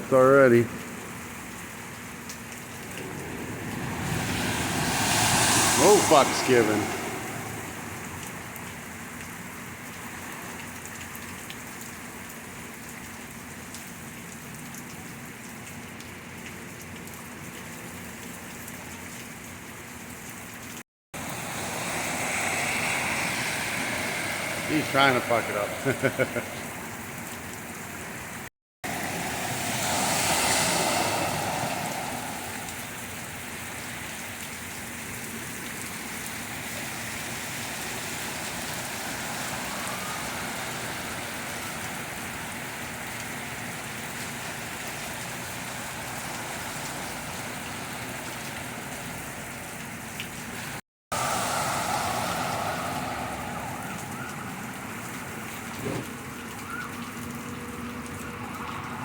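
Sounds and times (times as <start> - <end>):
car tyres through deep water: 0.0 - 59.0
steady rain: 0.0 - 59.0.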